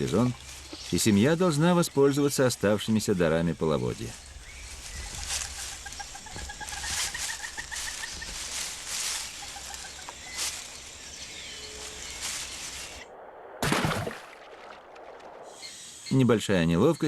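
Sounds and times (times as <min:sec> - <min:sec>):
hissy rustling: 0:03.9 - 0:13.0.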